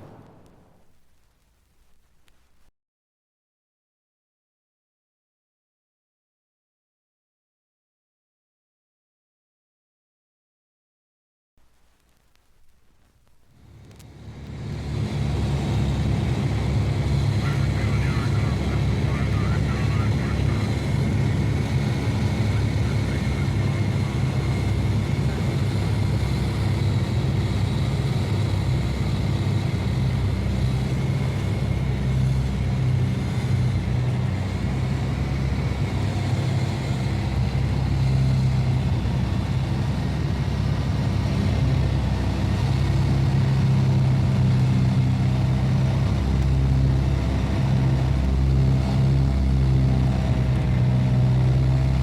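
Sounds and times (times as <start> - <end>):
faint steady whine: 0.0 - 2.7, 11.6 - 14.1
vehicle engine humming: 11.6 - 52.0.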